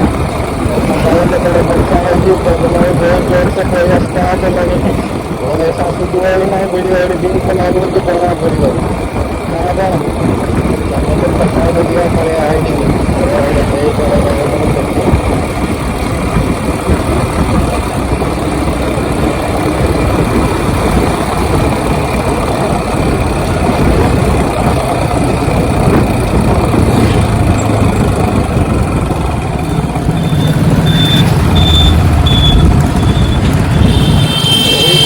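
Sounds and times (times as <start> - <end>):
wind rumble on microphone: 0.0 - 34.4
road and traffic noise: 0.0 - 35.0
short high beeps: 30.2 - 33.4.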